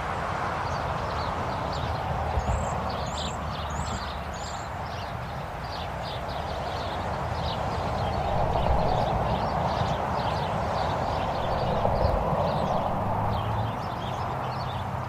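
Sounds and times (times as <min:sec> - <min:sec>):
road traffic noise: 0:00.0 - 0:15.0
small birds chirping: 0:00.7 - 0:15.0
vehicle approaching: 0:08.1 - 0:09.2, 0:11.3 - 0:14.2.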